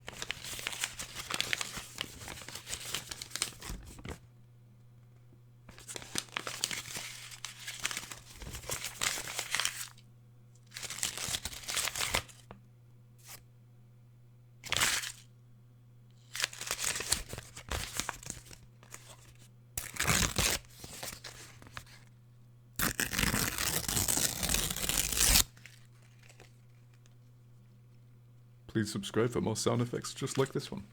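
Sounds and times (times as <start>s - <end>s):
paper tearing and crumpling: 0.1s - 4.1s, 5.8s - 9.9s, 10.8s - 12.3s, 19.8s - 21.9s, 22.8s - 26.5s.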